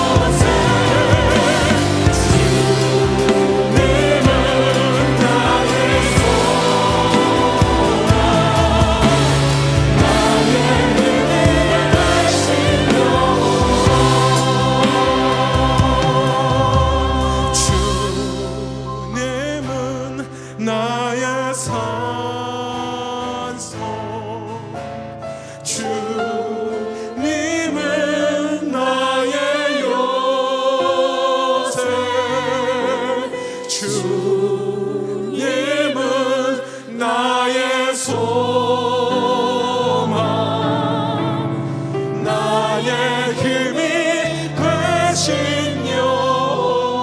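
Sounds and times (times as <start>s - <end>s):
held bass line: 0.0s - 19.1s
sustained instrumental chords: 0.0s - 19.6s
choir singing a slow hymn: 0.0s - 19.7s, 25.6s - 47.0s.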